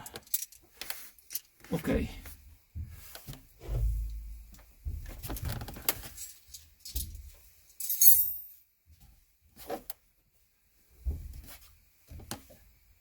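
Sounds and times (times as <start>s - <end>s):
dull knocks and rustles: 2.7s - 6.2s
metallic jingle: 7.8s - 8.6s.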